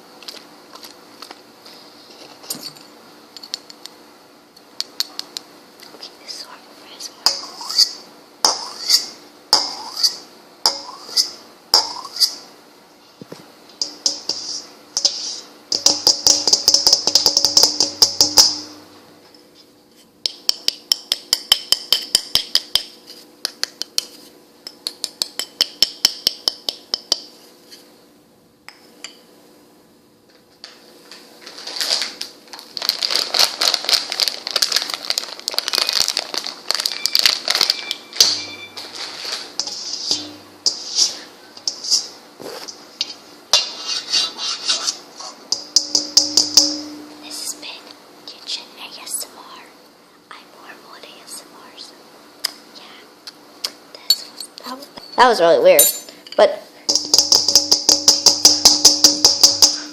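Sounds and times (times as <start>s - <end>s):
dishes and utensils clinking: 36.9s - 41.8s.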